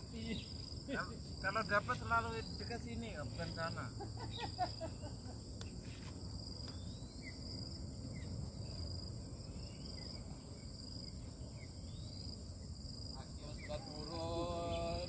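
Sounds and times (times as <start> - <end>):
insects droning: 0.0 - 15.0
pulsing insect drone: 0.0 - 15.0.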